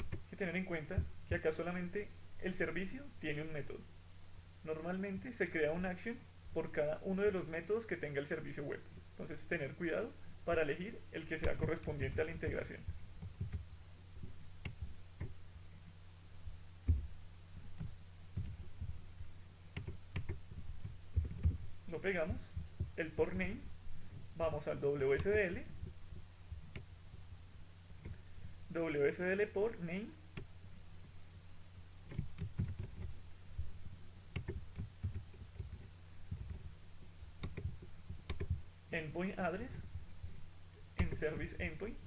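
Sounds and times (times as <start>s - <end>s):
soft low thumps: 0.0s - 1.5s, 10.2s - 28.8s, 30.4s - 38.8s, 39.4s - 42.0s
low electrical hum: 0.0s - 42.0s
computer mouse clicking: 13.2s - 13.6s, 14.2s - 15.4s, 19.7s - 21.6s, 32.1s - 33.2s, 34.3s - 36.7s, 37.4s - 38.6s.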